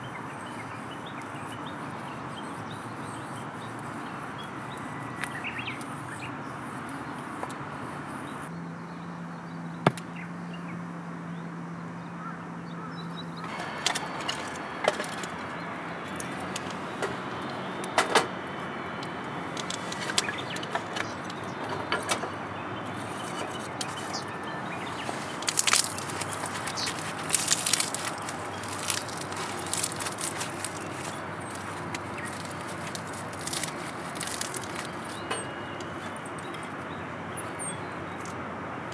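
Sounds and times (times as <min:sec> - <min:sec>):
wood fire crackling: 0:25.0 - 0:35.2.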